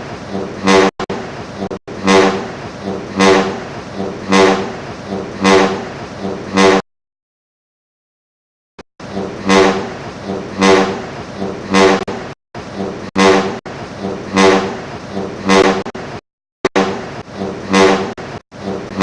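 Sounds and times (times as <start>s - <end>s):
vehicle horn blasts: 0.6s - 0.9s, 2.0s - 2.4s, 3.2s - 3.6s, 4.3s - 4.7s, 5.4s - 5.8s, 6.5s - 6.8s, 9.4s - 9.8s, 10.6s - 10.9s, 11.7s - 12.0s, 13.2s - 13.6s, 14.3s - 14.7s, 15.4s - 15.8s, 17.7s - 18.1s.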